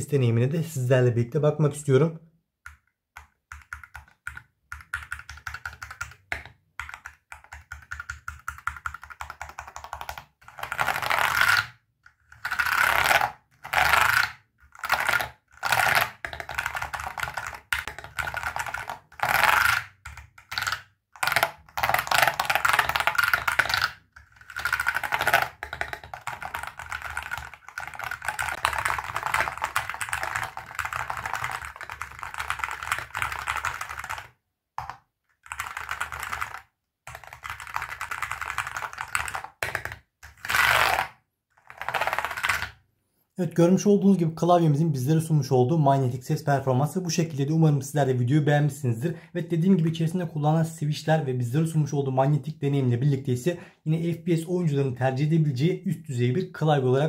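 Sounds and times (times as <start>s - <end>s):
keyboard typing: 2.7s - 42.7s.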